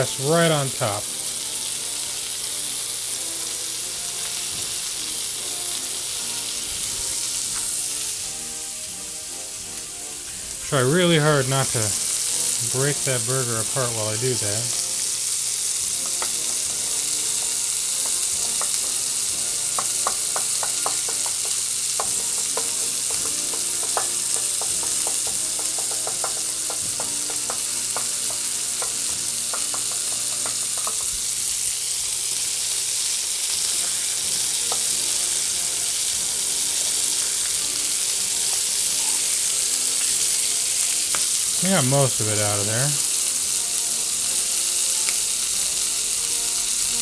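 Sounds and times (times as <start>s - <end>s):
patties sizzling in frying pan: 0.0s - 47.0s
small sharp clicks and pops: 19.7s - 31.2s.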